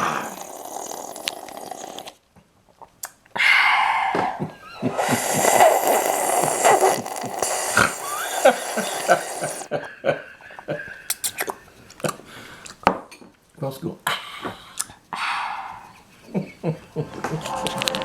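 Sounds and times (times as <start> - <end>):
person slurping soup: 0.0 - 2.2, 4.8 - 9.7.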